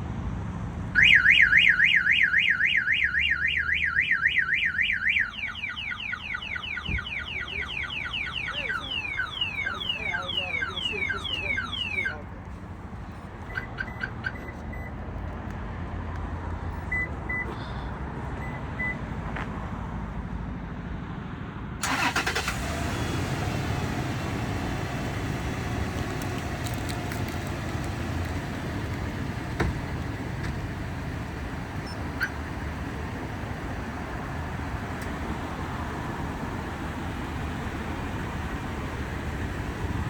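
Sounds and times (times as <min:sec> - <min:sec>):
car engine cranking and idling: 0:00.9 - 0:15.6, 0:21.8 - 0:40.0
car alarm beeps: 0:01.0 - 0:12.2, 0:13.5 - 0:14.9, 0:16.9 - 0:17.5, 0:18.4 - 0:19.0, 0:21.8 - 0:23.3, 0:31.1 - 0:33.0.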